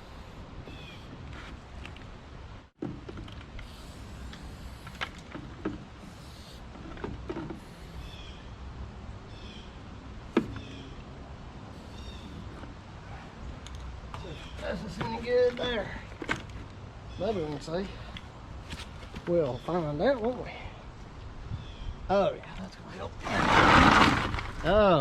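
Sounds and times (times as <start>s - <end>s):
mini excavator running: 23.2s - 24.8s.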